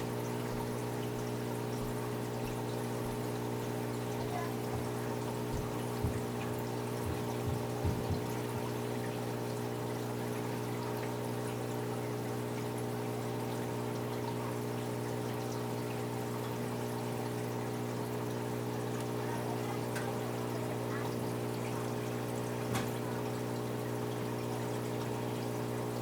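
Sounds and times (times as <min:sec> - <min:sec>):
low electric pump hum: 0:00.0 - 0:26.0
water trickling and pouring: 0:00.0 - 0:26.0
faint knocks: 0:07.0 - 0:08.5.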